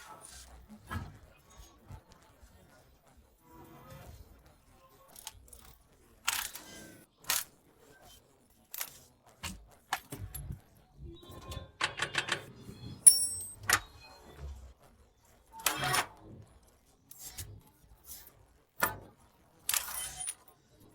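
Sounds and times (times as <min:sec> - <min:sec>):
metallic clicks and clinks of tools: 0:13.0 - 0:13.8, 0:19.7 - 0:20.5
sharp ringing metal clink: 0:13.1 - 0:13.7.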